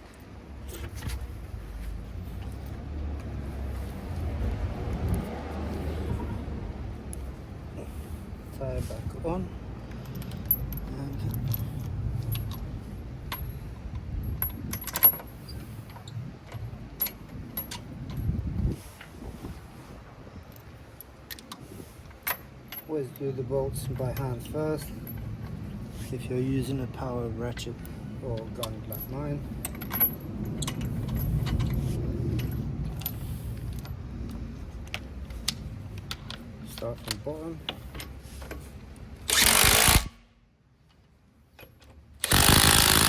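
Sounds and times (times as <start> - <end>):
low rumble of handling: 0.0 - 39.3
metal bolts clinking and rattling: 9.9 - 18.4, 20.5 - 25.7, 28.3 - 34.0
metal bolts clinking: 10.0 - 12.7, 14.4 - 18.3
sharp clicks: 39.3 - 40.2, 42.2 - 43.0.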